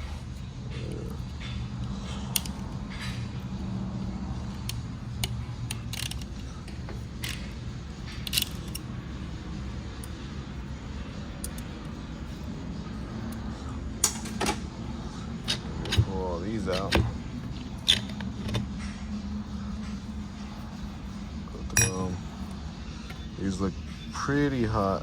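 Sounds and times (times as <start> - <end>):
low background hum: 0.0 - 25.0
metal clicks and clinks: 4.5 - 9.0, 21.7 - 22.2.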